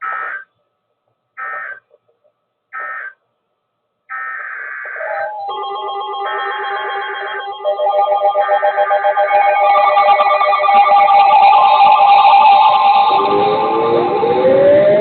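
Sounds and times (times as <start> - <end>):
digital warbling data bursts: 5.0 - 15.0
music: 5.2 - 15.0.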